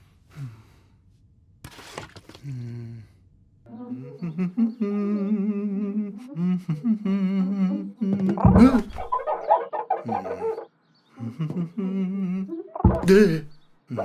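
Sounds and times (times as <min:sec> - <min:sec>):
clucking vocal noises: 0:03.7 - 0:14.0
voice humming a warbling tune: 0:03.7 - 0:14.0.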